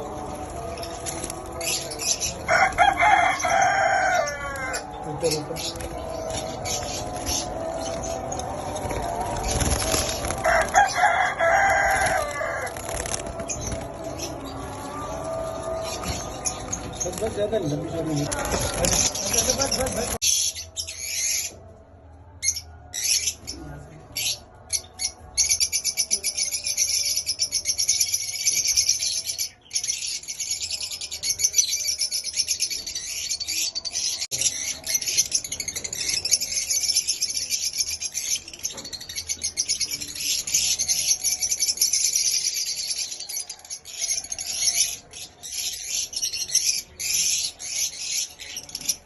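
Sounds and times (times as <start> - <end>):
small birds chirping: 0.0 - 21.5.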